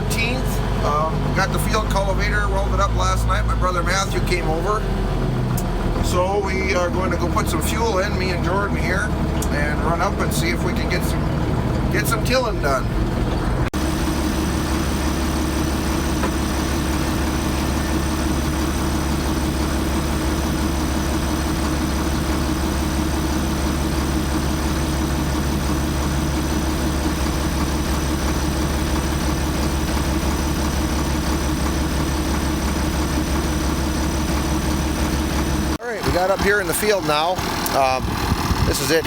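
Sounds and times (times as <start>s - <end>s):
tractor diesel engine running: 0.0s - 39.0s.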